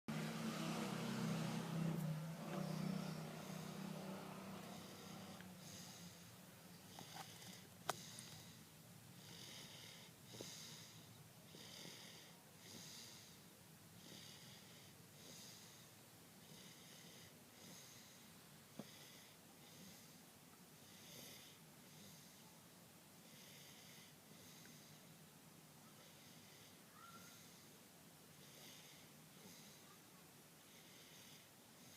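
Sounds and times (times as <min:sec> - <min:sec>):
baby snoring with wheeze: 0:00.1 - 0:08.6, 0:09.2 - 0:13.4, 0:14.0 - 0:18.2, 0:20.8 - 0:22.4, 0:25.9 - 0:27.8, 0:28.4 - 0:30.0, 0:30.6 - 0:31.9.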